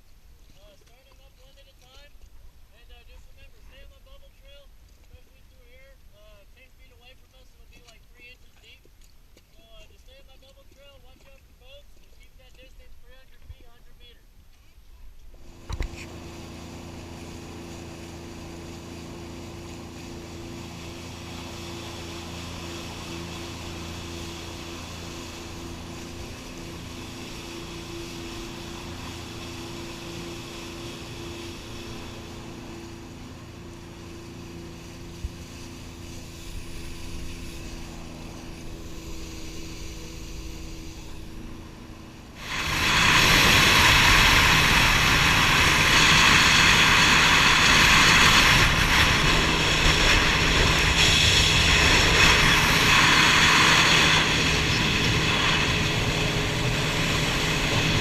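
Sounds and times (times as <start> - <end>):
jet ski engine: 0.0 - 8.8, 15.3 - 58.0
water rushing: 15.4 - 58.0.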